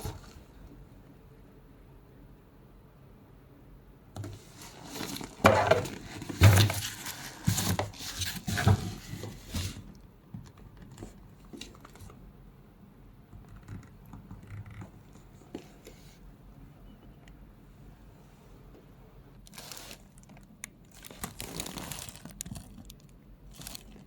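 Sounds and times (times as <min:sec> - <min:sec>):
packaging crinkling and rustling: 0:04.2 - 0:10.0, 0:19.4 - 0:24.0.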